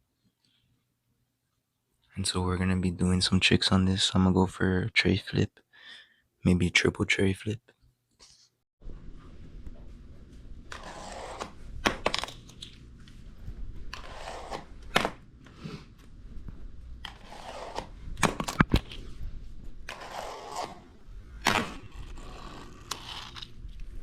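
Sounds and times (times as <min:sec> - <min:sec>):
fingerboard scraping: 0:10.7 - 0:11.6, 0:13.9 - 0:14.7, 0:17.0 - 0:18.0, 0:19.9 - 0:21.0, 0:21.6 - 0:23.5.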